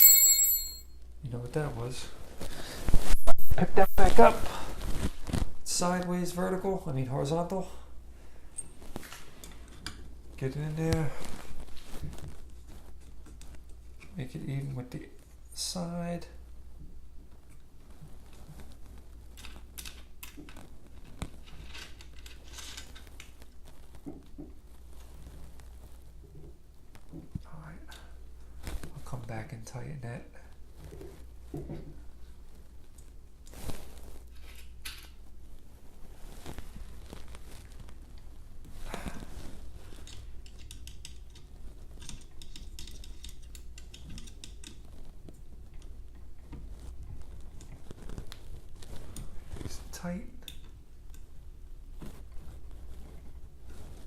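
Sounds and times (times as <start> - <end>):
metal parts clicking and scraping: 21.4 - 23.0.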